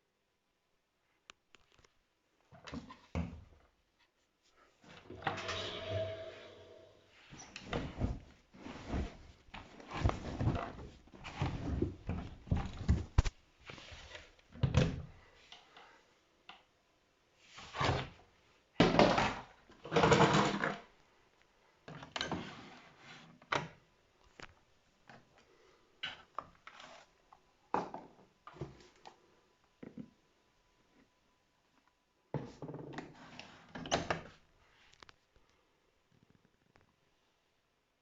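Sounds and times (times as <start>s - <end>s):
scraping or rushing noises: 5.2s - 7.1s.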